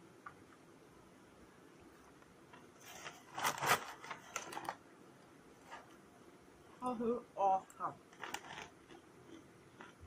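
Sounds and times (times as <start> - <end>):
crunching crispy snack: 8.1 - 10.0.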